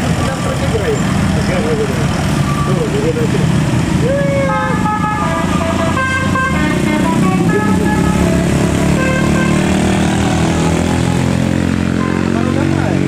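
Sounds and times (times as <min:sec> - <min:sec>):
vehicle engines running: 0:00.0 - 0:13.0
multi-tone bus horn melody: 0:04.4 - 0:12.8.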